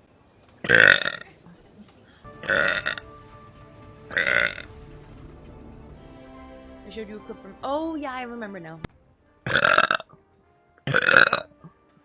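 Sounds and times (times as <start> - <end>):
loud burps: 0.6 - 1.4, 2.4 - 3.0, 4.1 - 4.6, 9.4 - 10.2, 10.8 - 11.8.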